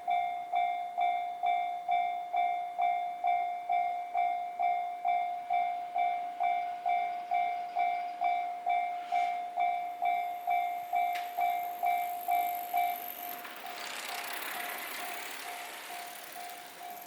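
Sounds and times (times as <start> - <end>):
level crossing alarm bell: 0.0 - 13.3.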